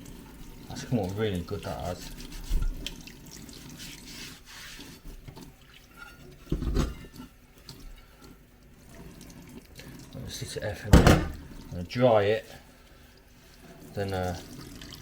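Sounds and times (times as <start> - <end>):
water running in sink: 0.0 - 15.0
knock: 10.9 - 11.4.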